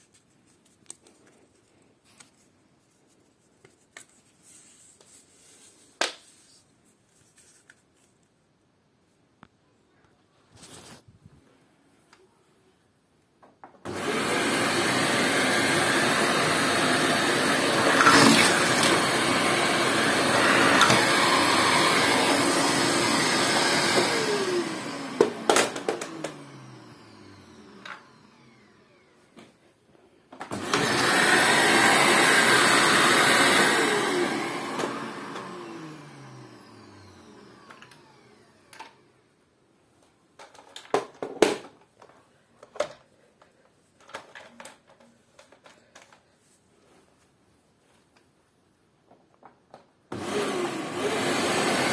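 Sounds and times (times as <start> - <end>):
vacuum cleaner running: 13.9 - 29.5, 30.5 - 39.0, 50.1 - 51.9.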